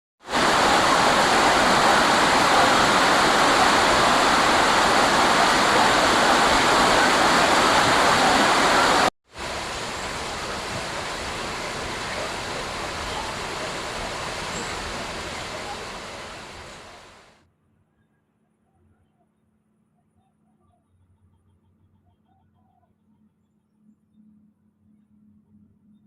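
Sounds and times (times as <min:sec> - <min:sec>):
running water rushing: 0:00.2 - 0:17.3.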